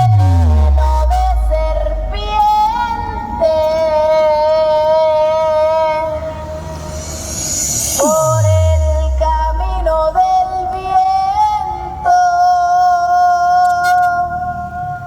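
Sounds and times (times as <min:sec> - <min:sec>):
synth lead melody music: 0:00.0 - 0:03.4, 0:05.9 - 0:10.7
deep bass: 0:00.0 - 0:11.7.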